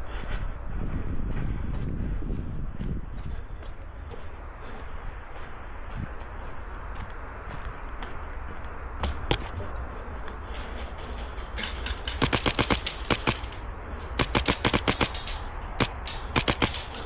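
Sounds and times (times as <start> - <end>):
airsoft guns firing: 9.3 - 9.6, 11.6 - 17.0.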